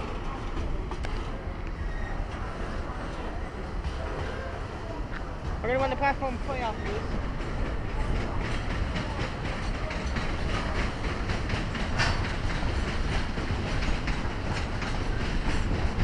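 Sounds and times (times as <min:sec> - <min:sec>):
train rumbling past: 0:00.0 - 0:16.0
wheel clicks over rail joints: 0:06.8 - 0:16.0.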